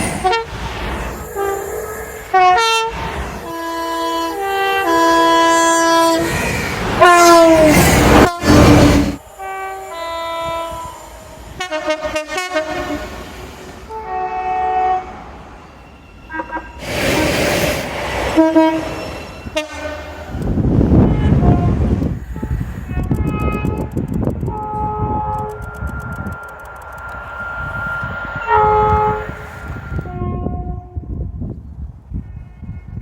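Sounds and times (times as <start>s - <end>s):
rush of passing train: 0.0s - 33.0s
two-note train horn blasts: 9.4s - 11.0s, 24.5s - 25.6s, 27.2s - 31.3s.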